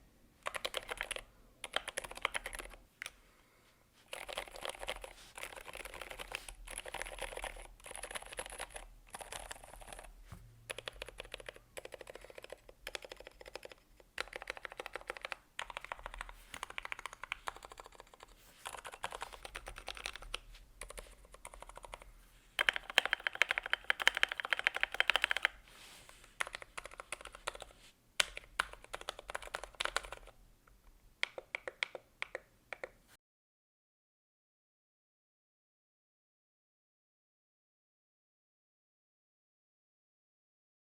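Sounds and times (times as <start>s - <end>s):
typing on mechanical keyboard: 0.4s - 3.2s, 4.1s - 10.1s, 10.7s - 22.0s, 22.6s - 25.6s, 26.4s - 30.4s, 31.2s - 33.0s.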